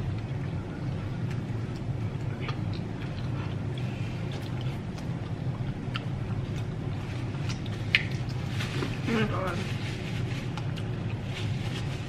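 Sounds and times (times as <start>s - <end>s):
steady low hum: 0.0s - 12.0s
chewing clicks and smacks: 1.2s - 6.7s, 7.5s - 8.4s.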